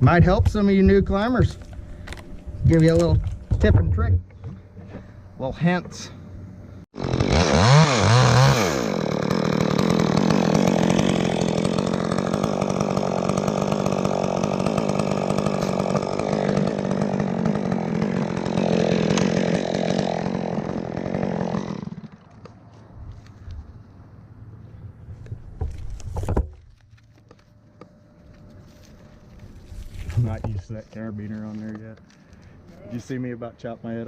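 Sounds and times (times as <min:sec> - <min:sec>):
chainsaw cutting wood: 0:06.9 - 0:22.9.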